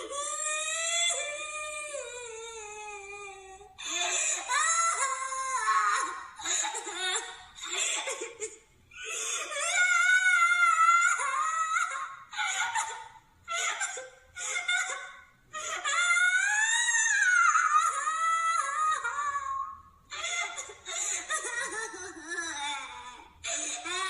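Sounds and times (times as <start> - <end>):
cartoon cat voice sobbing: 0.0 - 7.2, 21.1 - 24.0.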